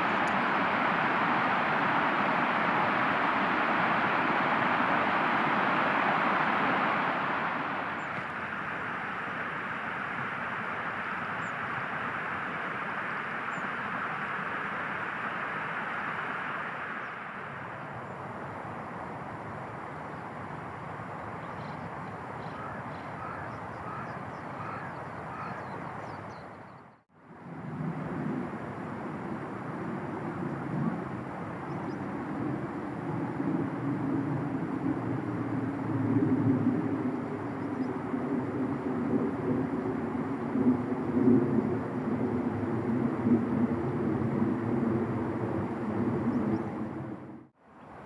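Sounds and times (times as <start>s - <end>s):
outdoor background noise: 0.0s - 48.0s
short bird calls: 22.4s - 26.8s.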